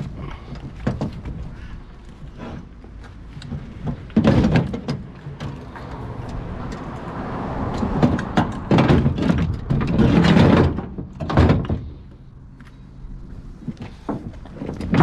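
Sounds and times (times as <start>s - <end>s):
scrap metal scraping and clattering: 7.7s - 12.2s
loud metal thunk: 7.9s - 12.0s.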